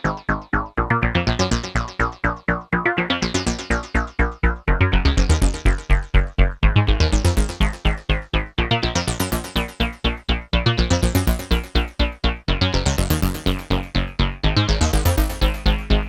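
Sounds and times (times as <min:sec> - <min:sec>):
synthesizer bass notes: 0:03.2 - 0:16.0.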